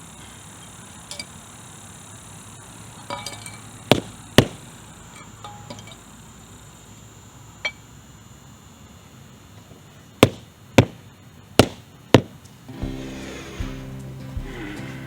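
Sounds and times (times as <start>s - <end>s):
hand tool striking blows: 3.1s - 6.0s, 10.2s - 11.0s, 11.6s - 15.0s
music: 12.7s - 15.0s.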